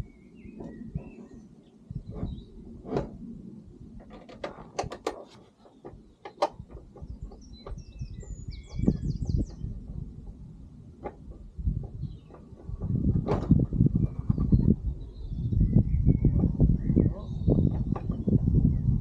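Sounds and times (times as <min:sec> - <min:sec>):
birds chirping: 0:00.0 - 0:02.8, 0:05.2 - 0:10.4, 0:11.8 - 0:13.0, 0:14.0 - 0:19.0
tools clicking and knocking: 0:04.0 - 0:07.8.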